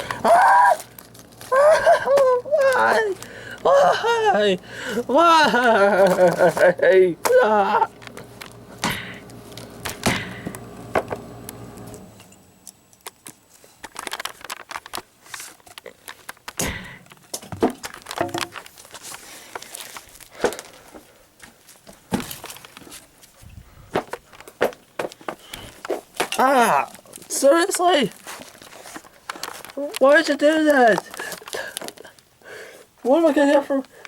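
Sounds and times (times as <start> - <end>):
faint steady hum: 0.0 - 34.0
stapler being smashed: 8.8 - 9.2, 9.8 - 10.5, 16.2 - 18.7.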